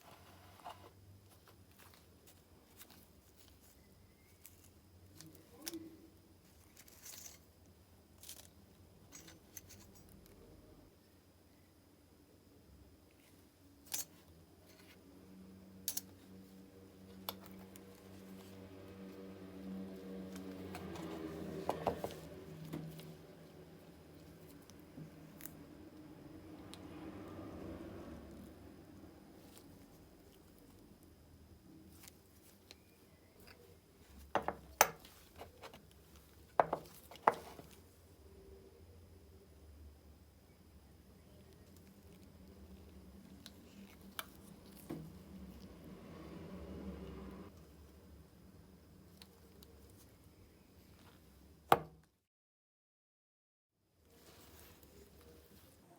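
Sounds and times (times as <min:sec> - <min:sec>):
faint steady hum: 0:00.0 - 0:52.2.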